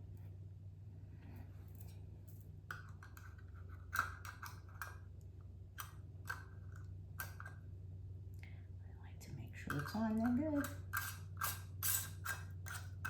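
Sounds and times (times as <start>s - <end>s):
steady low hum: 0.0s - 13.0s
metal bands scraping on jar threads: 9.7s - 13.0s.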